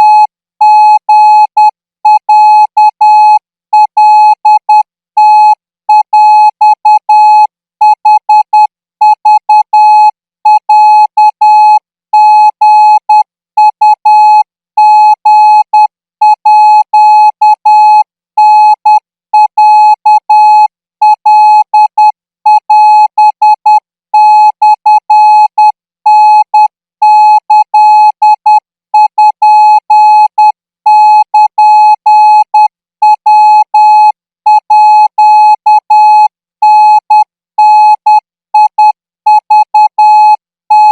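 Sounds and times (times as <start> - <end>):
morse code beeps: 21.0 - 23.8, 27.3 - 31.5, 33.0 - 38.0, 38.6 - 40.9.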